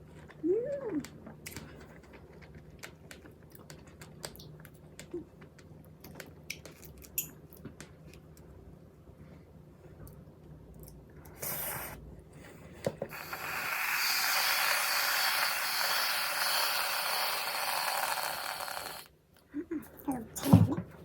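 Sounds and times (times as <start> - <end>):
aerosol can hissing: 13.1 - 19.1.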